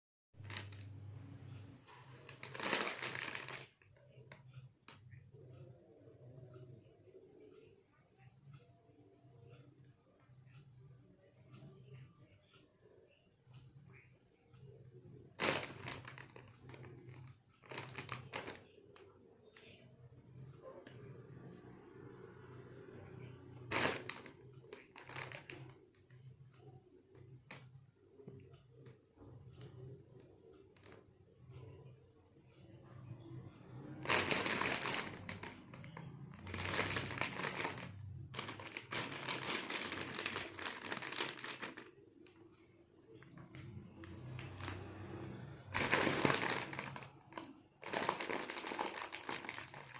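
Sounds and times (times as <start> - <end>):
plastic wrapper crinkling: 2.3 - 3.8, 15.4 - 18.6, 23.7 - 25.7, 34.0 - 41.9, 45.7 - 49.9.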